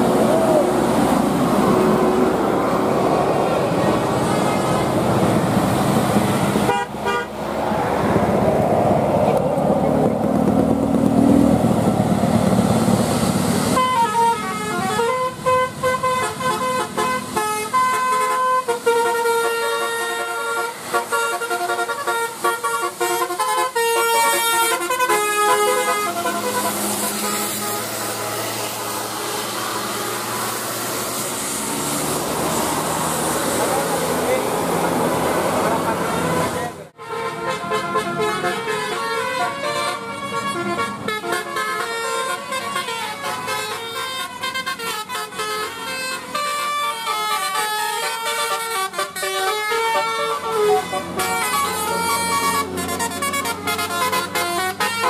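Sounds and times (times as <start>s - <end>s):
engine and road noise: 0.0s - 55.0s
multi-tone bus horn tune: 6.4s - 7.5s, 13.6s - 31.6s, 35.7s - 55.0s.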